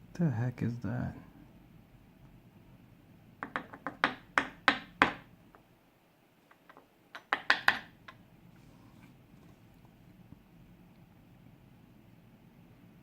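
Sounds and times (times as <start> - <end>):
lock parts tapping on hard surface: 3.4 - 5.6, 6.5 - 8.2.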